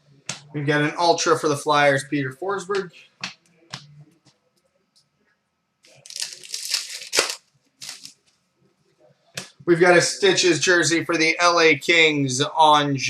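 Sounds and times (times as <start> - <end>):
cards rustling and scraping: 5.9 - 8.2
sharp card snap: 6.2 - 8.1.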